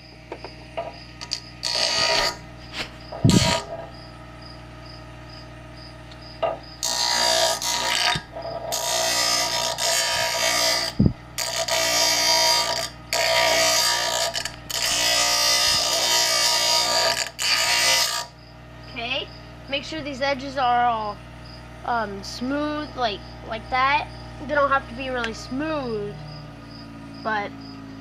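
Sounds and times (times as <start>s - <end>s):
grinding plastic pipe: 0.3s - 4.1s, 6.2s - 18.5s
electric grinder motor running: 1.2s - 5.4s, 6.1s - 18.5s, 22.7s - 28.0s.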